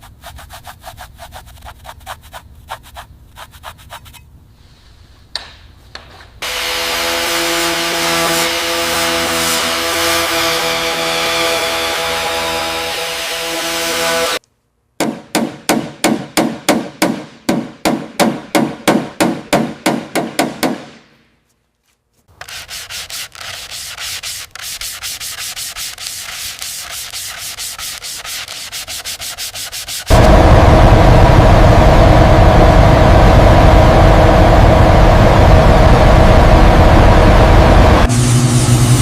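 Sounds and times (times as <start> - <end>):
hand sanding strokes: 0.0 - 4.2, 6.4 - 14.4, 22.3 - 30.1
quick rubbing strokes: 0.0 - 5.0, 22.2 - 30.1.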